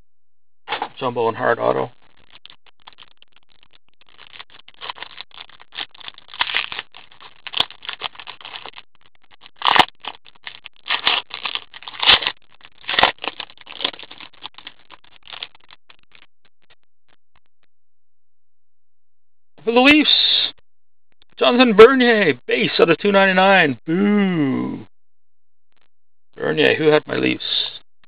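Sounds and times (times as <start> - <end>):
cards and packaging rustling: 4.0 - 8.8, 9.4 - 16.2.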